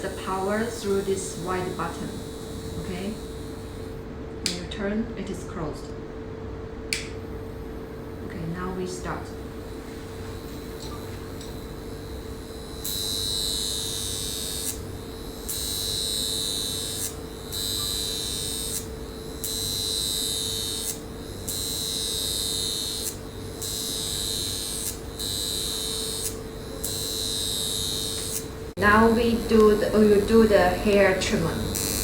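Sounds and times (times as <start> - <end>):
facial wand buzzing: 0.0 - 4.0, 7.0 - 32.0
steady hum: 0.0 - 32.0.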